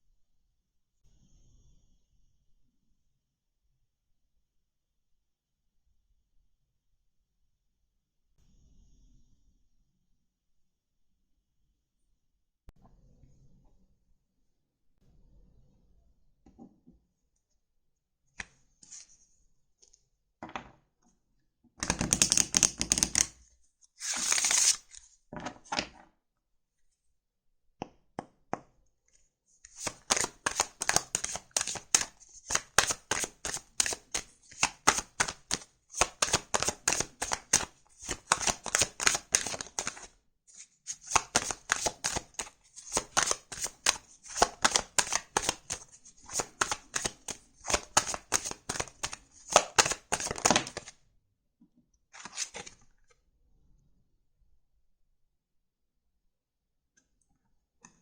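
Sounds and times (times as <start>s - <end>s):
cards rustling: 21.8s - 23.4s, 24.0s - 25.1s, 29.7s - 50.9s, 52.2s - 52.8s
cards shuffling: 21.8s - 23.4s, 24.0s - 25.1s, 29.7s - 51.0s, 52.2s - 52.8s.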